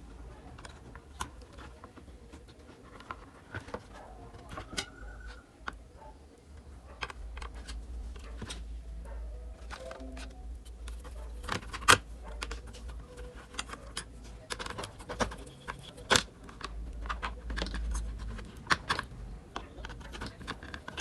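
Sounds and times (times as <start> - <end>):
tools clicking and scraping: 0.4 - 21.0.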